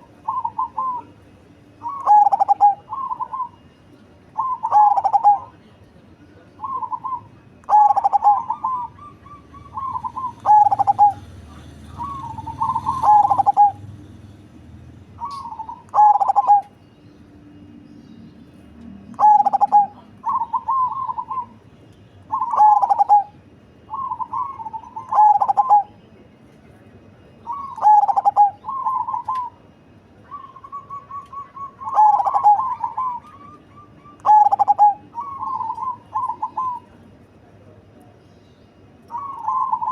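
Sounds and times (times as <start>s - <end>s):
dove cooing: 0.0s - 1.2s, 1.8s - 3.7s, 4.4s - 5.6s, 6.6s - 13.9s, 15.2s - 16.7s, 19.1s - 21.6s, 22.3s - 26.0s, 27.4s - 29.6s, 30.2s - 37.0s, 39.1s - 39.9s.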